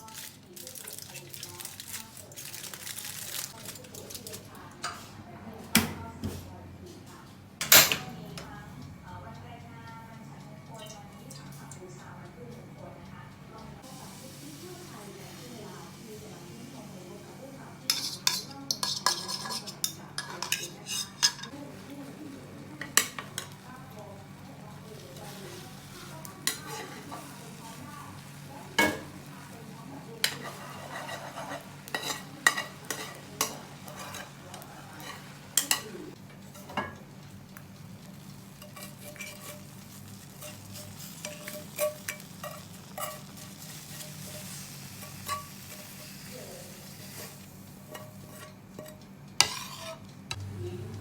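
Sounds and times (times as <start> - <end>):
steady low hum: 46.4 - 51.0.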